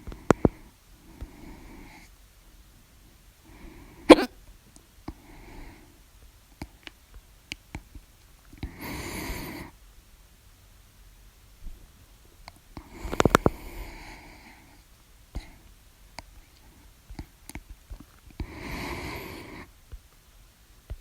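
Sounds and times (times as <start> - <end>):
person hiccuping: 4.1 - 4.4.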